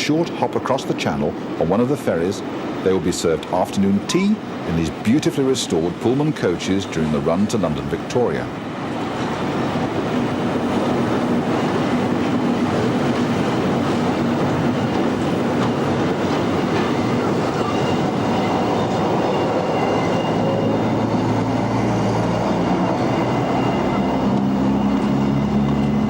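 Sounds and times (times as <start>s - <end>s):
train wheels rumbling on rails: 0.0s - 26.0s.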